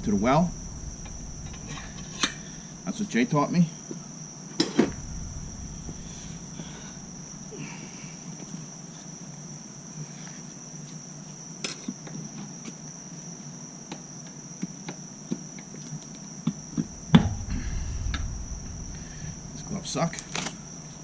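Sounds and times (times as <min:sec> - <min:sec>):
low rumble: 0:00.0 - 0:03.5, 0:04.9 - 0:08.4, 0:16.7 - 0:21.0
crickets chirring: 0:00.0 - 0:21.0
sharp knock: 0:16.8 - 0:21.0.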